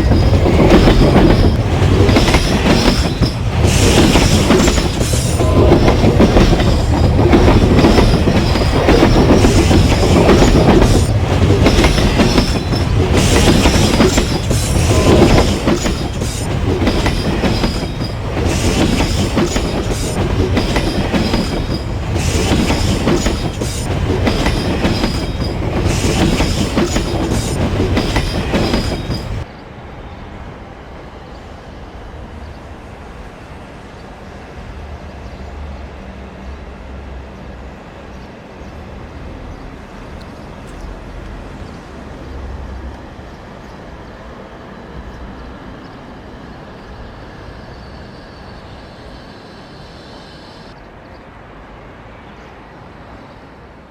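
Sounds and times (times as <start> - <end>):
train wheels clickety-clack: 0.0 - 29.5
low train rumble: 0.0 - 53.9.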